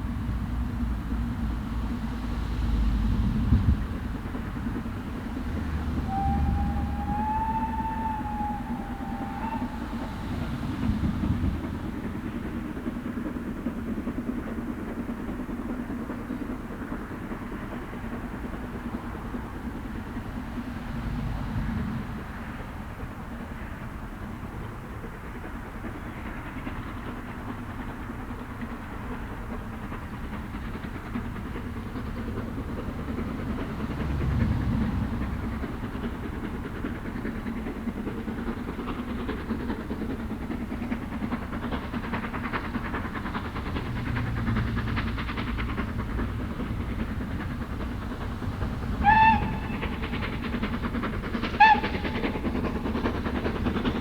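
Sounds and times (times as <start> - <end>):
steam train running on rails: 0.0 - 54.0
locomotive whistle blast: 6.0 - 10.5, 49.0 - 50.0, 51.6 - 52.3.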